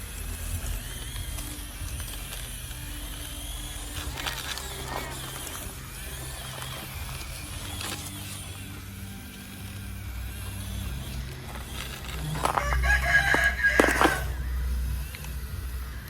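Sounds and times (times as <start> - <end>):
low hum: 0.0 - 16.0
rooster crowing: 12.2 - 14.5.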